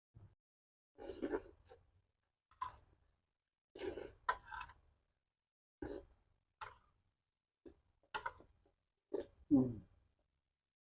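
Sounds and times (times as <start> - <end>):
person eating and smacking: 1.0 - 1.8.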